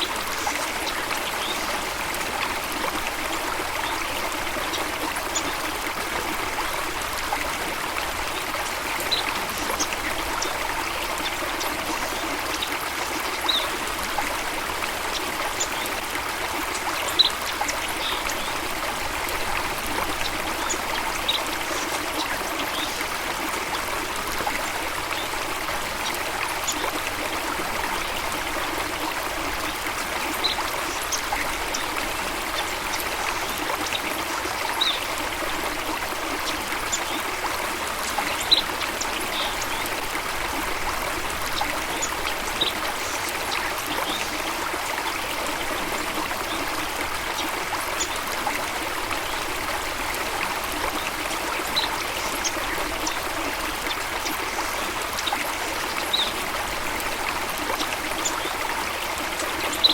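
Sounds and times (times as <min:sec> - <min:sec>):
stream of water trickling: 0:00.0 - 0:59.9.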